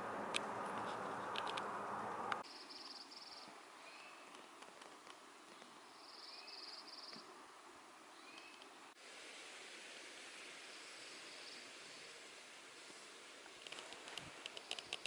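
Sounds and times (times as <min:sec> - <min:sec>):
songbird buzzy trills: 0:05.5 - 0:07.3
click: 0:13.6 - 0:15.0.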